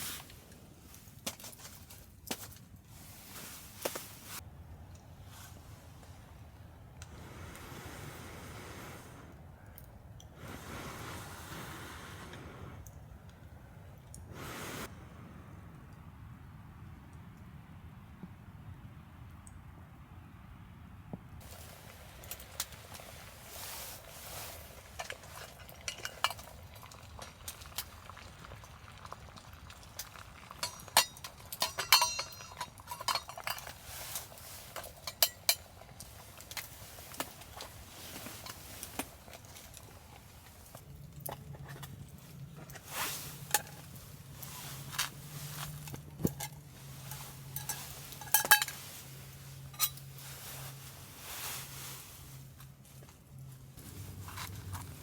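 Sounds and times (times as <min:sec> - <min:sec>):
metal utensils clinking on cookware: 0:24.1 - 0:29.4, 0:30.0 - 0:39.8, 0:45.7 - 0:50.1.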